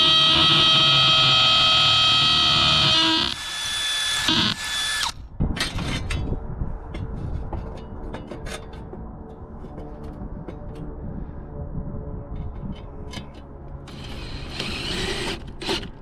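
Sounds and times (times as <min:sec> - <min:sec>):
power drill whining: 0:00.0 - 0:05.2, 0:13.9 - 0:16.0.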